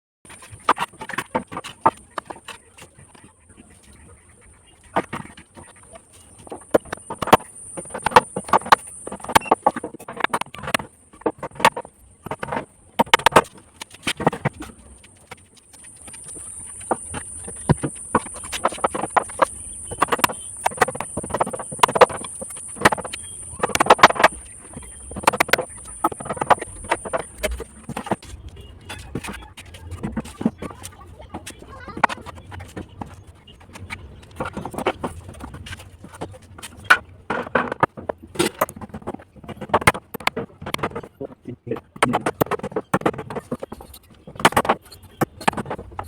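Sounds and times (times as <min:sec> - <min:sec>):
sharp clacks and knocks: 0:04.9 - 0:46.0
high-pitched hiss: 0:15.7 - 0:28.2.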